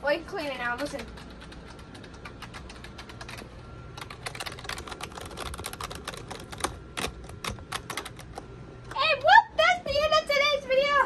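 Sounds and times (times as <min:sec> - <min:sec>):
typing on a keyboard: 0:00.5 - 0:08.5.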